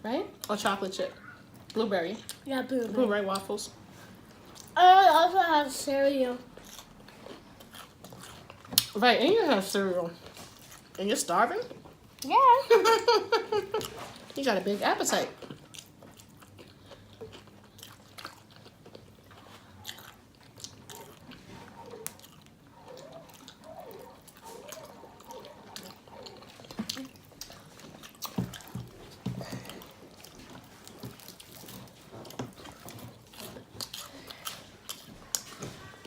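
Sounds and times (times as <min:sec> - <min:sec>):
crunchy chewing: 0:06.5 - 0:09.0, 0:10.1 - 0:11.0, 0:15.3 - 0:36.0.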